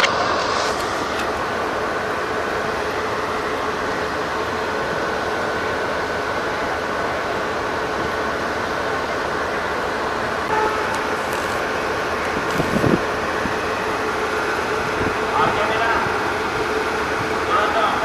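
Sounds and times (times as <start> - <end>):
train mechanical hum: 0.0 - 18.0
short tone: 10.5 - 11.2.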